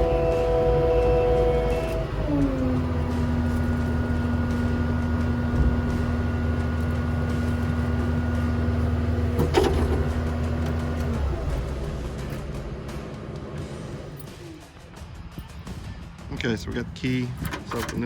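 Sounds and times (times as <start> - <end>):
diesel engine running: 0.0 - 18.0
sharp clunk: 9.4 - 10.3.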